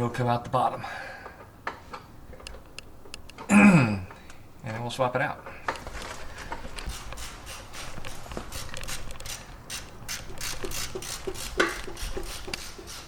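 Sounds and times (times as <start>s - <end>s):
ratchet wrench clicking: 6.9s - 13.0s.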